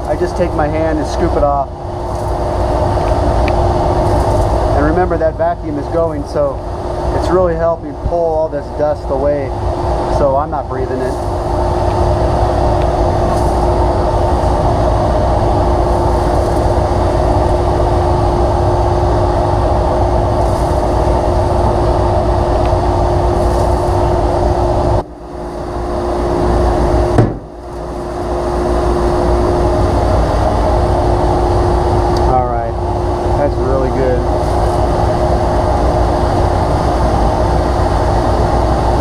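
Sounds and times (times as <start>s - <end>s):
dust collector humming: 0.0s - 39.0s
sharp knock: 27.2s - 27.5s.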